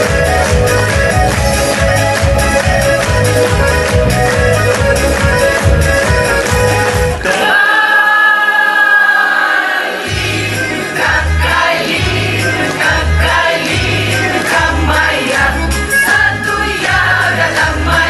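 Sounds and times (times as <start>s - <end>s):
musical accompaniment: 0.0s - 7.7s, 9.7s - 18.0s
group singing in chorus: 7.2s - 18.0s.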